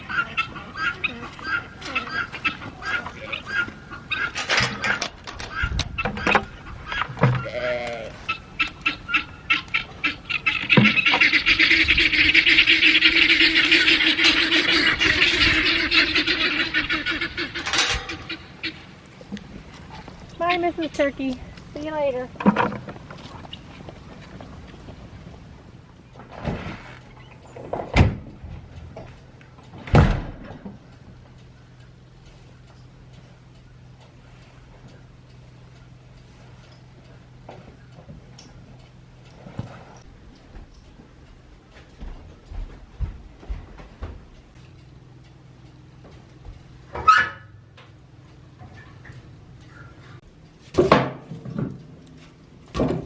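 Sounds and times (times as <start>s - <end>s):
poultry chattering: 0.0s - 25.4s
wavering bleat: 7.2s - 8.4s.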